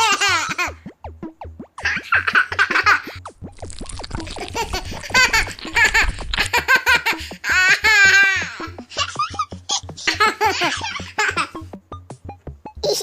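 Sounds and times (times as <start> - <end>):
baby giggling: 0.0 - 0.8, 1.8 - 3.2, 4.2 - 11.6, 12.8 - 13.0
baby squealing with laughter: 4.3 - 9.8.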